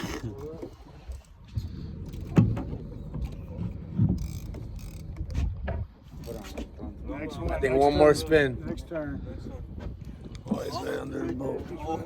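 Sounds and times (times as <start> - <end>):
fishing reel being cranked: 4.1 - 5.4, 6.1 - 6.7.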